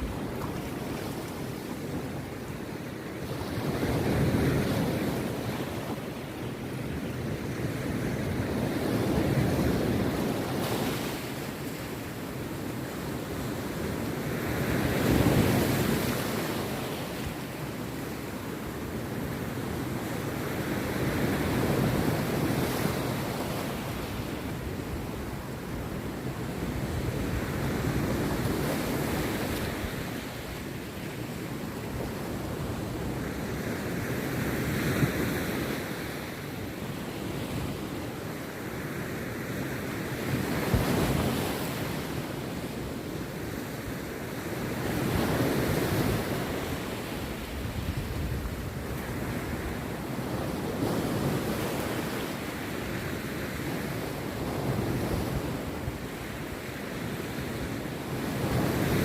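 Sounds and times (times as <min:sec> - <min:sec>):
waves crashing on a beach: 0:00.0 - 0:59.0.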